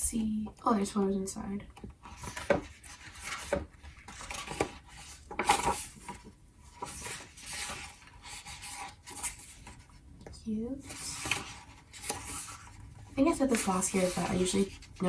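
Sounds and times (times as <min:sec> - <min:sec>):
paper pages rustling: 0:02.0 - 0:10.0, 0:10.8 - 0:15.0.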